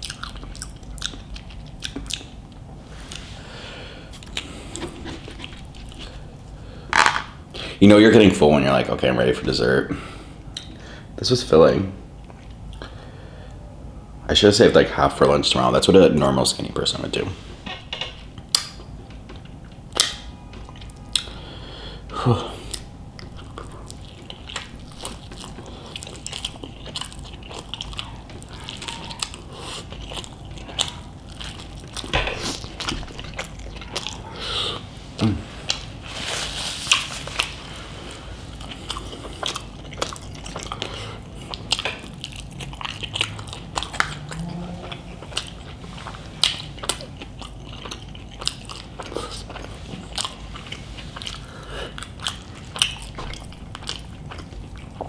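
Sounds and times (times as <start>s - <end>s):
person chewing and biting: 0.0s - 3.2s, 22.7s - 36.0s, 36.9s - 55.0s.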